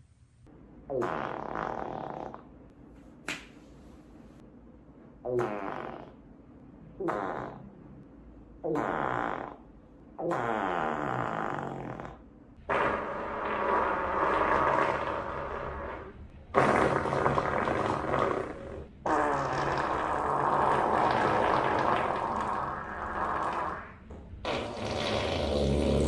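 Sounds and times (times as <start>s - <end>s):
farts: 0.9s - 2.5s, 5.3s - 6.2s, 7.0s - 7.7s, 8.6s - 26.0s.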